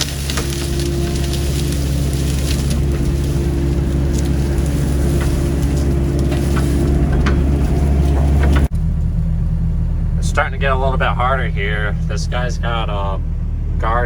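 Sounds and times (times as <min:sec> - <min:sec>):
light cracks and clicks: 0:00.0 - 0:08.7
excavator diesel engine running: 0:00.0 - 0:14.0.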